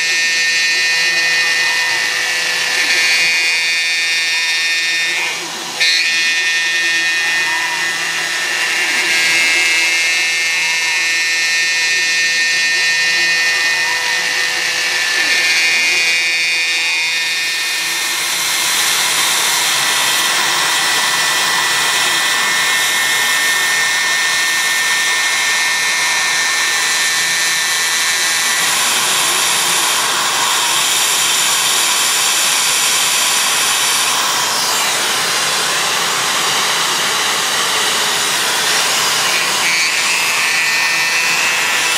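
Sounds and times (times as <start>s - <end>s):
axis drives whirring: 0.0s - 41.9s
milling spindle whine: 0.0s - 41.9s
cutting plastic: 13.5s - 41.9s.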